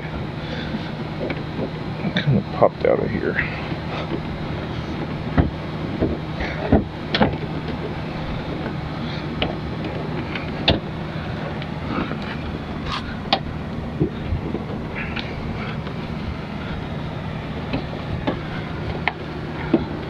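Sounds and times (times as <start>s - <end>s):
low background hum: 0.0s - 20.0s.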